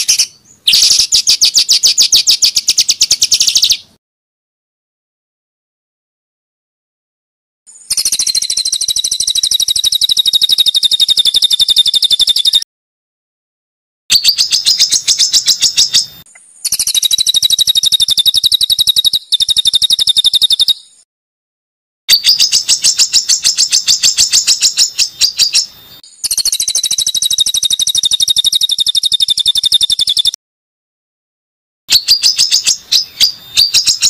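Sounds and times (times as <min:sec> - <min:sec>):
songbird rapid harsh trill: 0:00.0 - 0:03.9, 0:07.7 - 0:12.6, 0:14.1 - 0:21.0, 0:22.1 - 0:30.4, 0:31.9 - 0:34.0.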